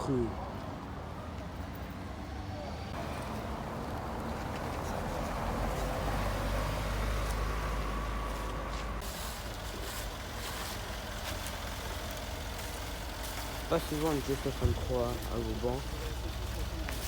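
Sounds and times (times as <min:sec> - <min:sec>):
car engine passing: 0:01.4 - 0:09.1.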